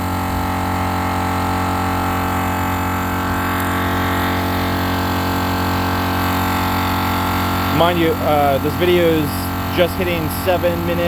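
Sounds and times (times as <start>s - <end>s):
air compressor running: 0.0s - 11.0s.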